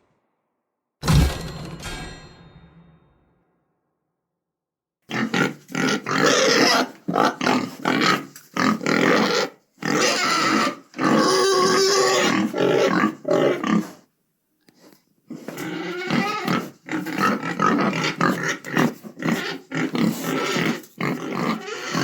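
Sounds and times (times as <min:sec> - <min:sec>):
pigs squealing and grunting: 0:05.1 - 0:14.1, 0:15.3 - 0:22.0.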